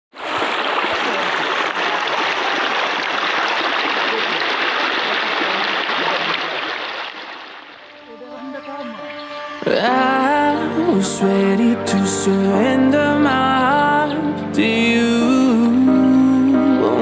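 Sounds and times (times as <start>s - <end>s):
waterfall rushing water: 0.2s - 8.0s.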